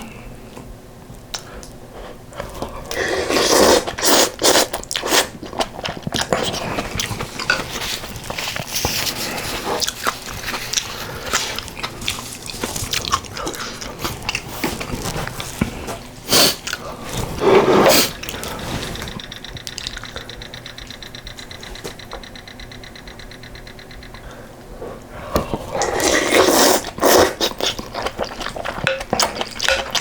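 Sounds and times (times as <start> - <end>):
wet chewing and mouth clicks: 2.4 - 23.6, 25.4 - 30.0
loud slurps: 2.9 - 5.3, 16.2 - 19.2, 25.6 - 27.8.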